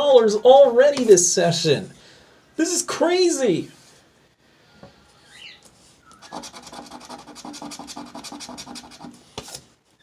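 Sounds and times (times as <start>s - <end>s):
lottery ticket being scratched: 6.2s - 9.6s.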